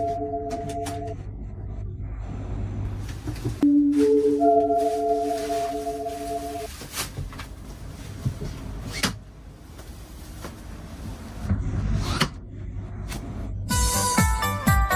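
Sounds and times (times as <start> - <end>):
low rumble: 0.0 - 6.7, 10.9 - 13.7.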